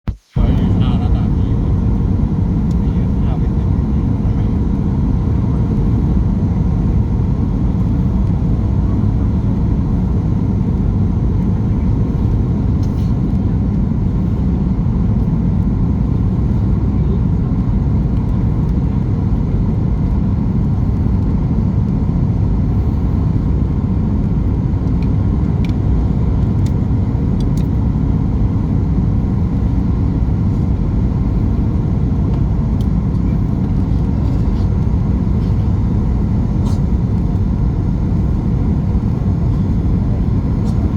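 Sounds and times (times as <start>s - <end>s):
airplane cabin engine drone: 0.1s - 40.9s.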